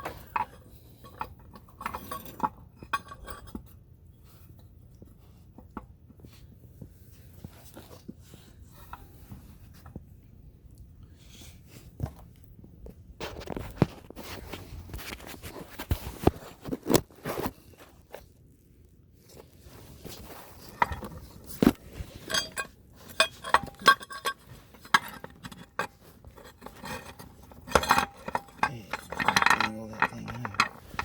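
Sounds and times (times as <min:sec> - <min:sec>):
knocks and scrapes under car: 0:19.2 - 0:31.0.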